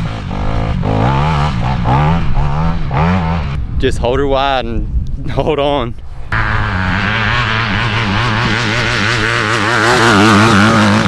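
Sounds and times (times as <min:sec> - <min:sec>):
dirt bike engine revving: 0:00.0 - 0:03.6, 0:06.3 - 0:11.0.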